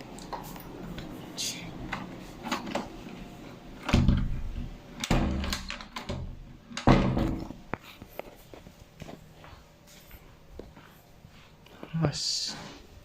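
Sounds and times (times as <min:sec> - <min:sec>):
door heavy thuds: 0:03.9 - 0:07.5.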